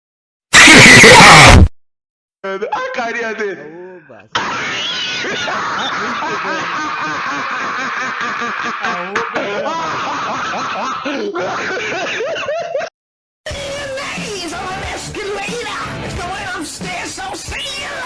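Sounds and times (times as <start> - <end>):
snickering laughter: 4.4 - 12.9.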